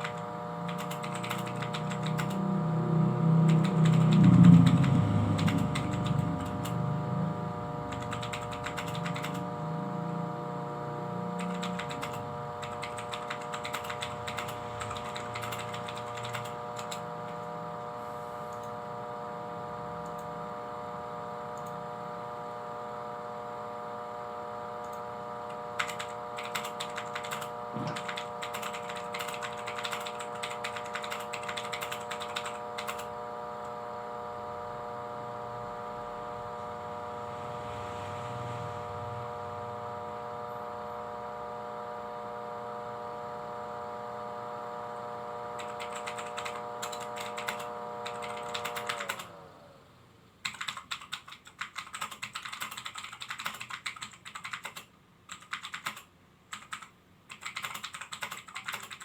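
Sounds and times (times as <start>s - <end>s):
rapid keyboard typing: 0.0s - 2.5s, 3.2s - 6.9s, 7.6s - 9.6s, 11.3s - 17.5s, 24.9s - 33.2s, 45.5s - 49.3s, 50.4s - 59.0s
steady electrical hum: 0.0s - 59.0s.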